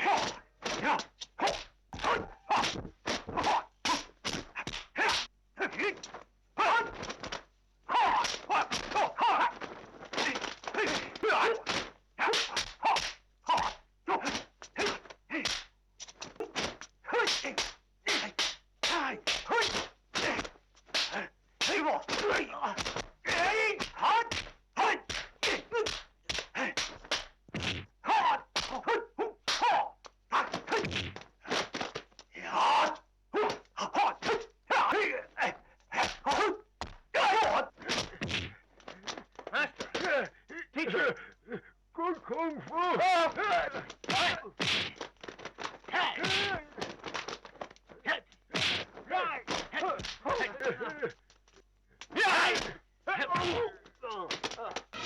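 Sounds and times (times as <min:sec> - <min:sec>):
swishes and smacks of blows: 0:00.0 - 0:05.3, 0:06.9 - 0:27.9, 0:28.5 - 0:32.2, 0:36.0 - 0:40.2, 0:43.3 - 0:55.0
fighters shouting: 0:00.0 - 0:07.0, 0:07.8 - 0:15.7, 0:16.4 - 0:26.9, 0:28.0 - 0:30.9, 0:32.4 - 0:38.2, 0:38.9 - 0:45.0, 0:45.8 - 0:47.0, 0:47.9 - 0:51.2, 0:52.0 - 0:55.0
punch and kick impacts: 0:25.1 - 0:27.9, 0:30.6 - 0:32.0, 0:44.0 - 0:47.4, 0:48.5 - 0:50.5.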